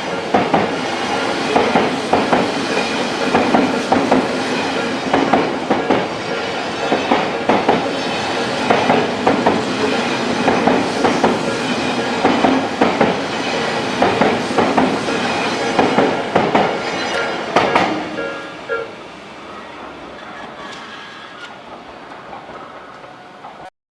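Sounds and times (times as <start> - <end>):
train wheels clacking over rail joints: 0.0 - 18.4, 20.1 - 23.7
crossing warning bell ringing: 2.7 - 8.9, 9.8 - 15.9, 16.8 - 19.9.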